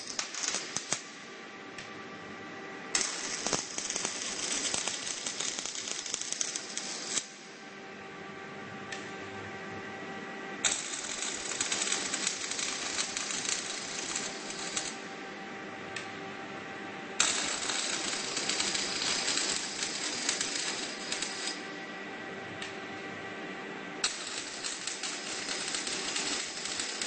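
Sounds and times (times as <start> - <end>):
welding arc crackling: 0.0 - 1.1, 2.9 - 7.3, 10.6 - 15.1, 17.2 - 21.6, 24.0 - 27.0
machine hum: 0.0 - 27.0.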